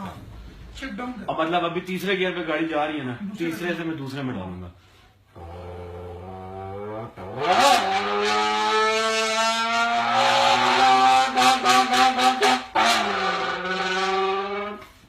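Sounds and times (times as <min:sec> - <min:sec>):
man imitating car engine: 0:05.4 - 0:14.8.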